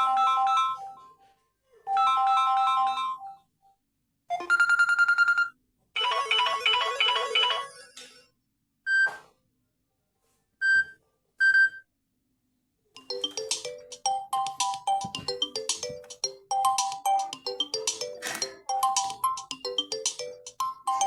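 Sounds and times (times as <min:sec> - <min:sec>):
bright melodic ringtone: 0:00.0 - 0:01.0, 0:13.0 - 0:21.0
ringtone repeating note pattern: 0:13.0 - 0:21.0.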